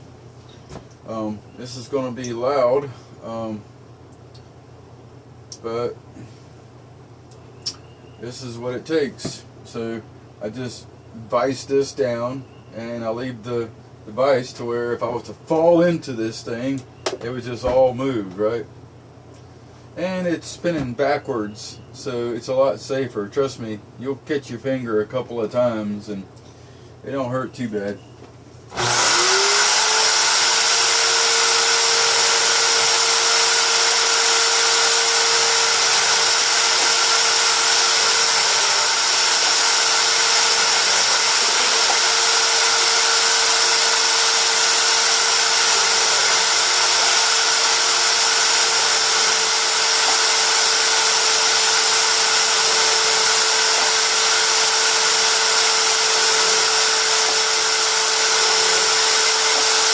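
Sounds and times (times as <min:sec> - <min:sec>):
hammer drill whining: 0:28.7 - 0:59.9.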